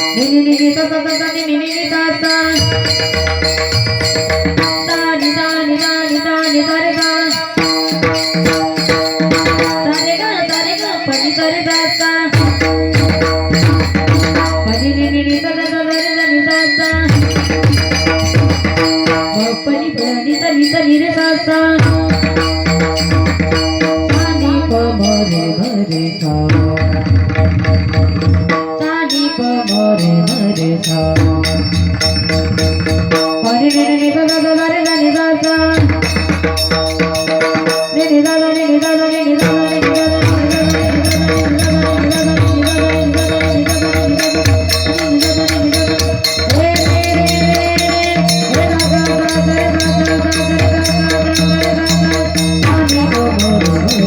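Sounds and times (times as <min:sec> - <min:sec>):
small cymbals jingling: 0:00.0 - 0:54.0
held melody: 0:27.8 - 0:54.0.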